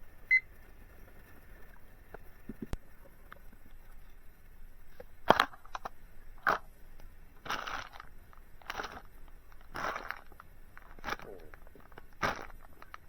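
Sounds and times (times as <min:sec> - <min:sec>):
short crunching noises: 0:07.4 - 0:13.0.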